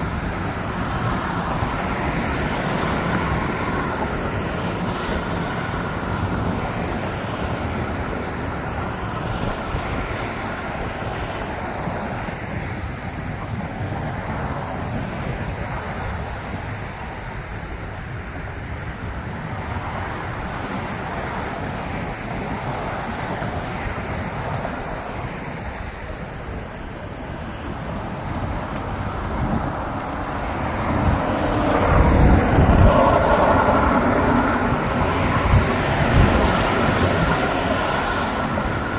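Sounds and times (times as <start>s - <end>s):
highway traffic noise: 0.0s - 38.9s
wind on microphone: 0.0s - 38.9s.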